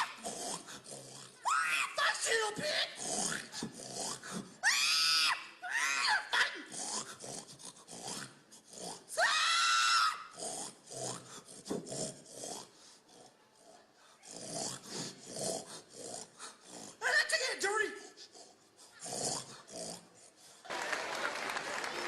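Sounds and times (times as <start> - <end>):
pig grunting: 0.0 - 1.4, 2.6 - 4.5, 6.7 - 9.1, 10.3 - 17.0, 18.0 - 20.2.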